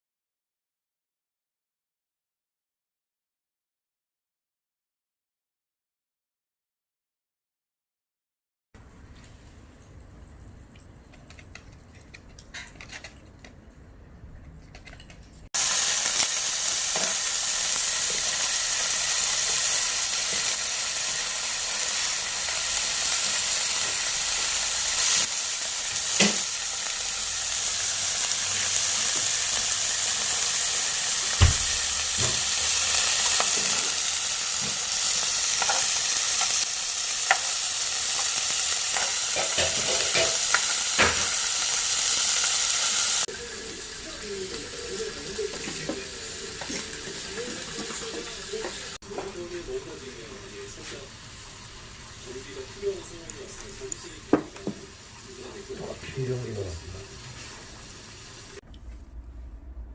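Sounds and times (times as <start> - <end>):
food sizzling in a frying pan: 15.6 - 58.6.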